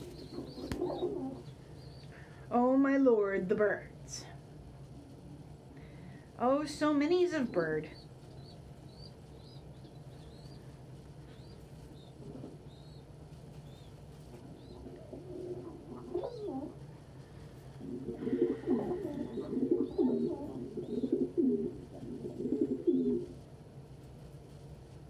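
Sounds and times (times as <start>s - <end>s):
pigeon cooing: 0.0s - 2.3s, 11.3s - 16.8s, 17.7s - 23.4s
faint high bird chirps: 7.9s - 10.7s.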